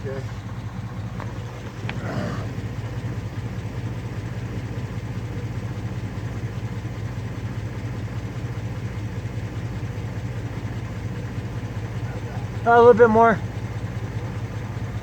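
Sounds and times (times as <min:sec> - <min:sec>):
pickup engine idling: 0:00.0 - 0:15.0.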